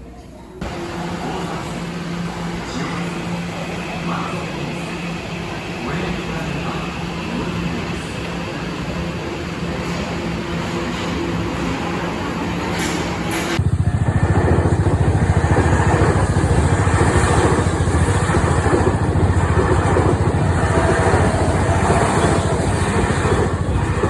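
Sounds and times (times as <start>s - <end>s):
vehicle engine rumbling: 13.6s - 24.0s.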